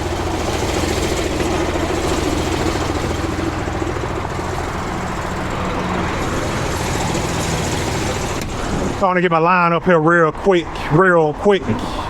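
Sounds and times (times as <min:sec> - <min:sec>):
highway traffic rushing: 0:00.0 - 0:12.0
truck engine idling: 0:00.0 - 0:12.0.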